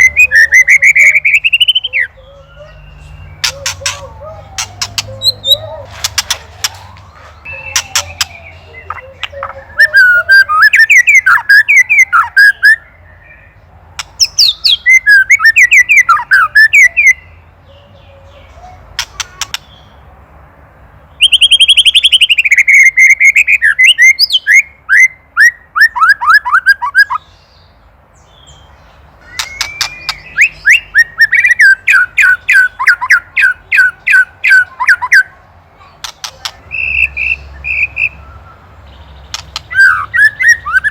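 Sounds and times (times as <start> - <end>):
bird calling repeated notes: 0.0 - 12.8, 21.2 - 27.3, 29.2 - 35.3, 36.0 - 40.9.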